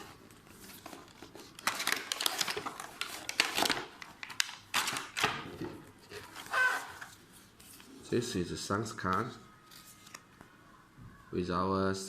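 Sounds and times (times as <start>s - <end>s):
packaging crinkling and rustling: 0.0s - 7.9s.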